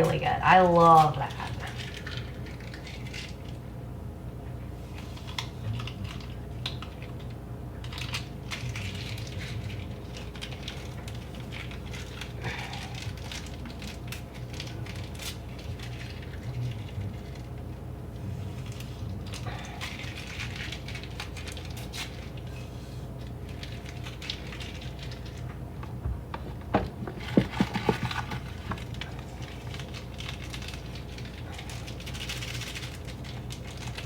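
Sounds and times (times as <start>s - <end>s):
small clicks and crackles: 1.6s - 3.6s, 4.9s - 17.8s, 18.4s - 34.0s
low hum: 25.2s - 29.9s.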